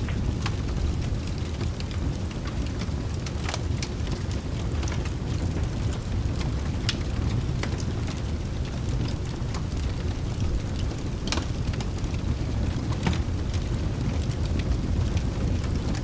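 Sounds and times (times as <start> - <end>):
log fire crackling: 0.0 - 16.0
rain: 0.0 - 16.0
deep rumble: 5.3 - 16.0.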